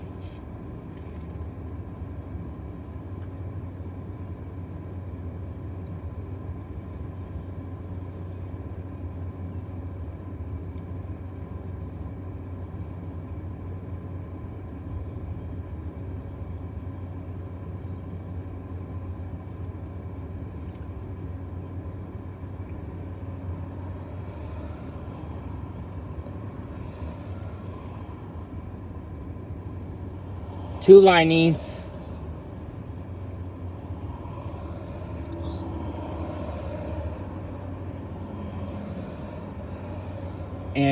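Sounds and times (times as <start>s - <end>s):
vehicle rumble and hum: 0.0s - 40.9s.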